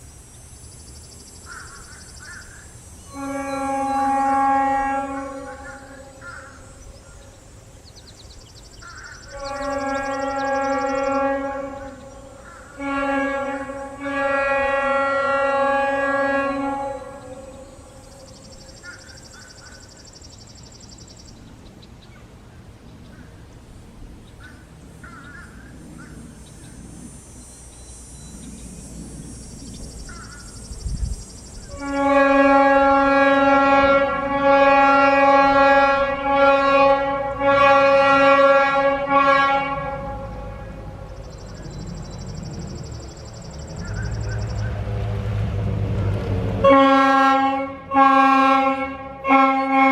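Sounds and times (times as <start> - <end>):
locomotive air horn blast: 3.0 - 7.0, 9.2 - 18.8, 31.6 - 43.0, 43.8 - 49.9.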